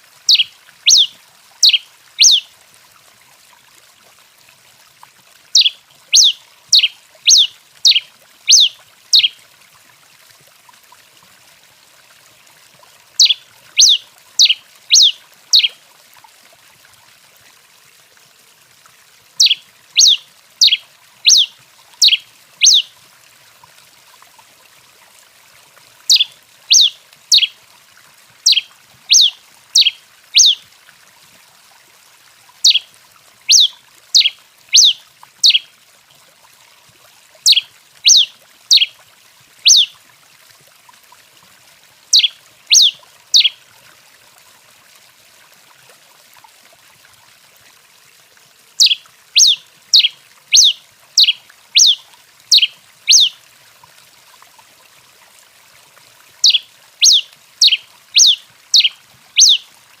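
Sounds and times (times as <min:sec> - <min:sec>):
finch calling sharp notes: 0:00.3 - 0:02.4, 0:05.6 - 0:09.4, 0:13.2 - 0:15.8, 0:19.4 - 0:22.9, 0:26.1 - 0:27.5, 0:28.4 - 0:30.6, 0:32.6 - 0:32.8, 0:33.5 - 0:35.6, 0:37.5 - 0:38.9, 0:39.7 - 0:39.9, 0:42.1 - 0:43.6, 0:48.8 - 0:53.4, 0:56.4 - 0:59.6.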